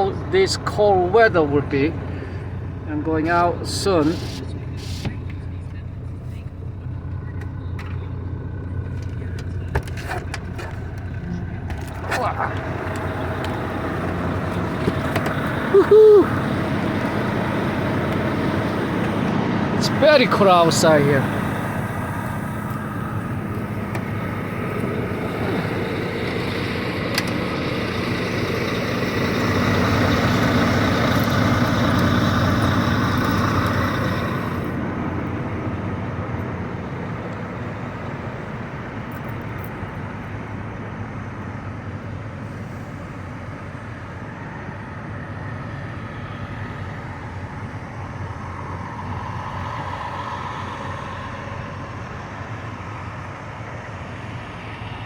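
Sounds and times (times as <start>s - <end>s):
diesel truck engines running: 0.0s - 55.0s.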